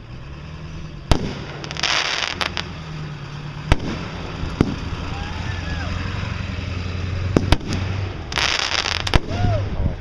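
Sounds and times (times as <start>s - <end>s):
firework bang: 1.1s - 2.7s, 3.7s - 4.8s, 7.3s - 9.6s
firework hissing burst: 1.1s - 2.7s, 7.3s - 9.4s.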